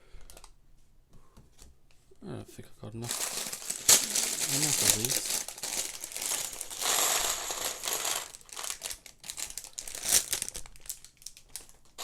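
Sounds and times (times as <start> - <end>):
plastic bag crinkling: 3.0 - 12.0
plastic pieces clicking and clattering: 3.1 - 12.0.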